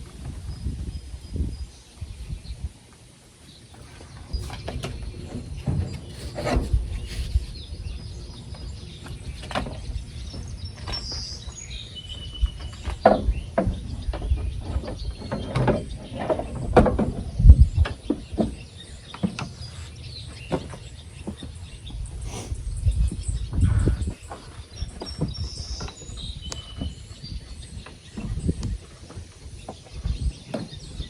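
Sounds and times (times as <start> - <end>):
bird chirps: 17.2 - 28.8.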